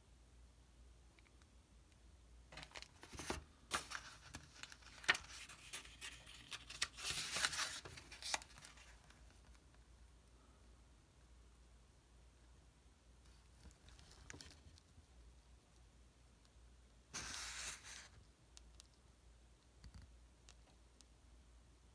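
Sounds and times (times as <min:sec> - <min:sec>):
paper pages rustling: 0:02.6 - 0:09.4, 0:17.2 - 0:18.1.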